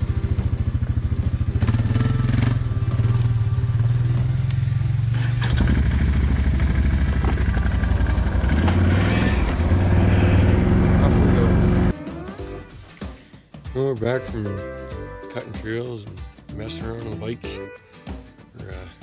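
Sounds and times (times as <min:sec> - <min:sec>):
off-road bike engine running: 0:00.0 - 0:12.0.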